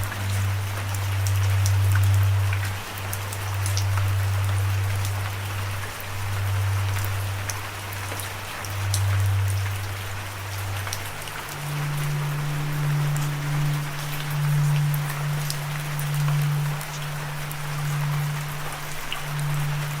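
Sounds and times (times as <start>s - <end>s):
raindrops ticking on a surface: 0.0s - 20.0s.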